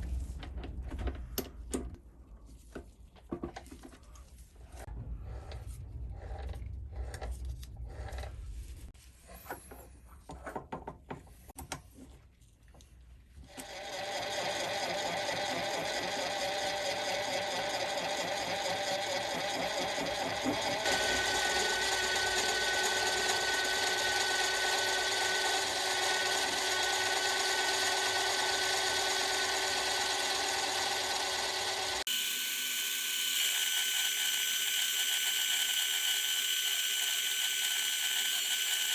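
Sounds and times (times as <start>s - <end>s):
metal lathe running: 13.6s - 38.9s.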